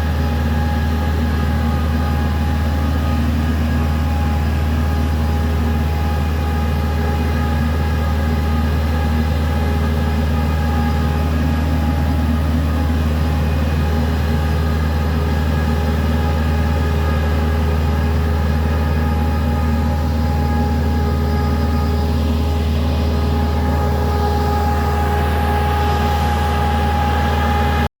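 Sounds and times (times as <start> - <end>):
sprayer engine humming: 0.0 - 27.9.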